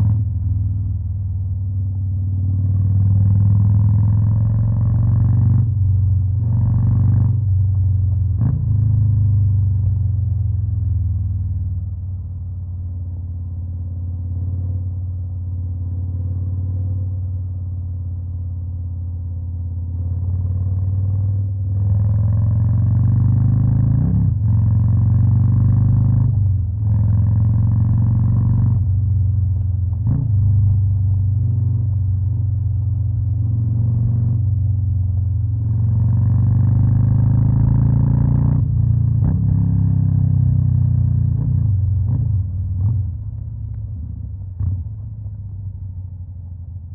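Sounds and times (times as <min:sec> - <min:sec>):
motorcycle engine revving: 0:35.3 - 0:43.3.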